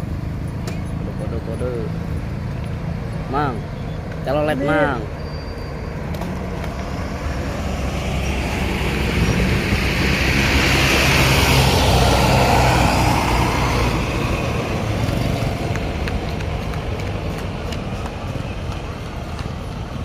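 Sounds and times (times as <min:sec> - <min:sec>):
bus diesel engine rumble: 0:00.0 - 0:20.0
road noise: 0:00.0 - 0:20.0.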